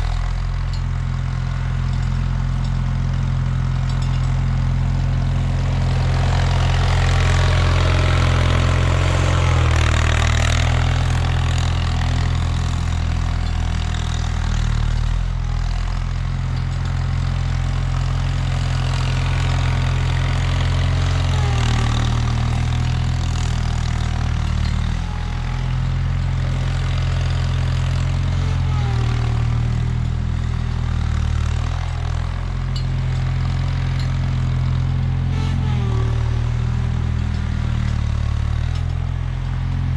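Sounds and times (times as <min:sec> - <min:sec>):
garden tractor engine running: 0:00.0 - 0:39.9.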